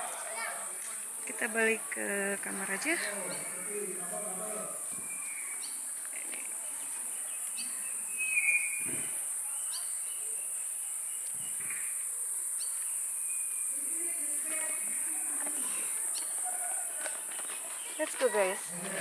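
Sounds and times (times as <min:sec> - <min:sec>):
bird chirps: 0:04.9 - 0:06.0, 0:06.8 - 0:13.9.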